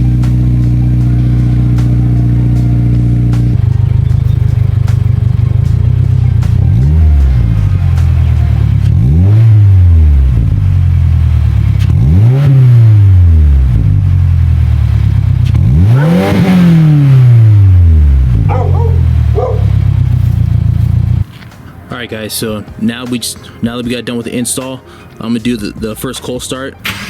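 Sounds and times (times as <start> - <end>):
car engine idling and revving: 0.0 - 21.4.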